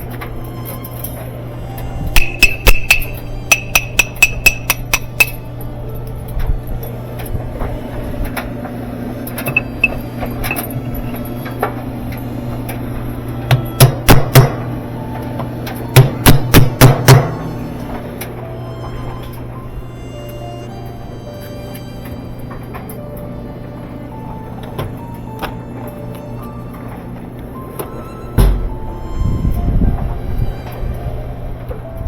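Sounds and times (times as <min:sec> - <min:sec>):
ringing hammer strikes: 0:02.1 - 0:05.5, 0:09.5 - 0:11.2, 0:13.5 - 0:14.7, 0:15.9 - 0:17.5.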